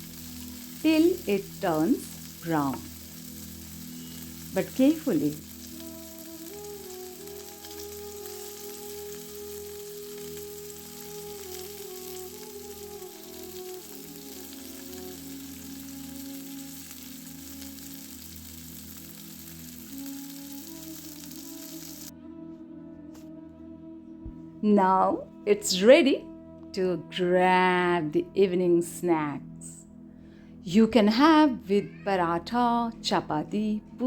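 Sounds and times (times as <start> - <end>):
vegetables sizzling in hot oil: 0.0 - 22.1
background music melody: 0.0 - 34.0.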